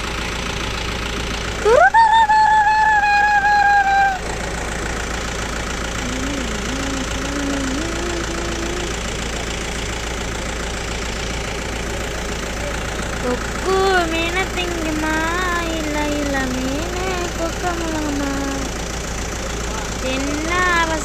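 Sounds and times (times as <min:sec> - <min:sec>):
boy's high-pitched held vocal: 0:01.6 - 0:04.4, 0:06.0 - 0:09.1, 0:13.2 - 0:18.7, 0:20.0 - 0:21.0.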